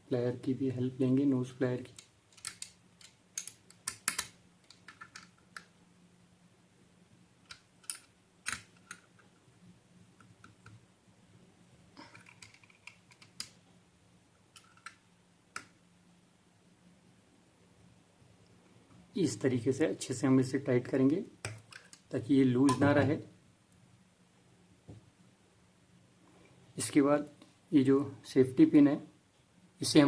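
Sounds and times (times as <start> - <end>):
tools clicking and tapping on metal: 1.9 - 5.7.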